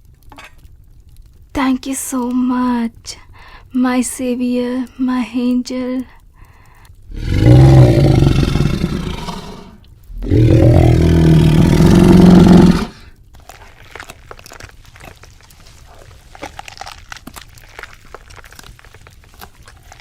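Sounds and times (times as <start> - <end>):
faint crackling ticks: 0.0 - 20.0
rough growls: 7.1 - 13.1.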